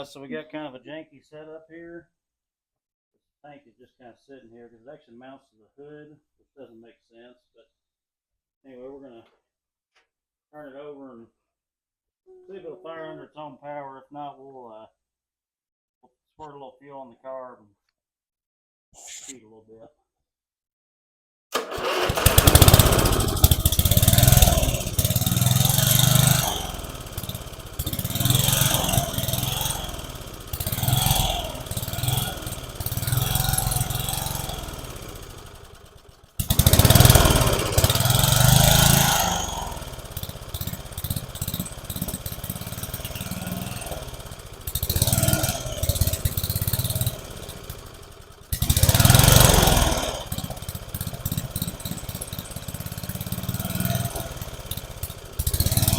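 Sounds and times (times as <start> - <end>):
lawn mower engine running unevenly: 21.6 - 55.9.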